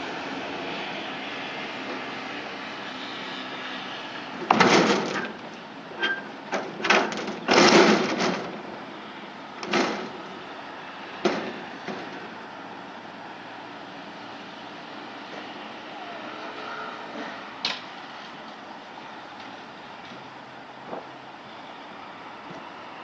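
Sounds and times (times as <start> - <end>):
steady background noise: 0.0 - 23.0.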